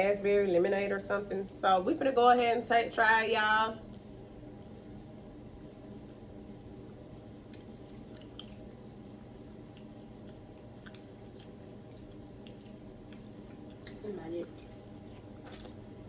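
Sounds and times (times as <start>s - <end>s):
low room hum: 0.0s - 16.0s
chewing soft candy: 3.8s - 16.0s.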